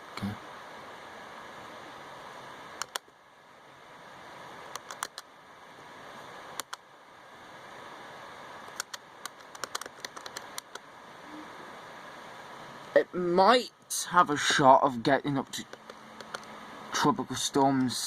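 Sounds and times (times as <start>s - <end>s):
microphone hiss: 0.0s - 18.0s
mouse and keyboard clicks: 2.8s - 3.0s, 4.7s - 5.3s, 6.6s - 6.8s, 8.7s - 10.8s, 15.6s - 16.5s.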